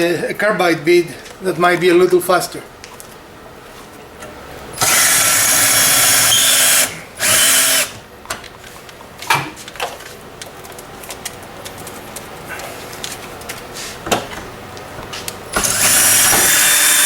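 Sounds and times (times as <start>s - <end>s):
power drill boring through door: 4.8s - 8.0s, 15.5s - 17.0s.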